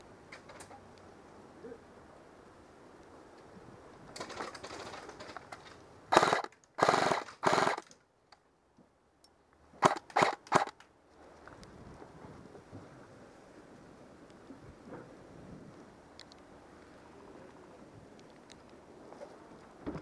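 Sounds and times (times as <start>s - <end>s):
airsoft gun firing bursts: 6.1s - 7.9s, 9.8s - 10.8s.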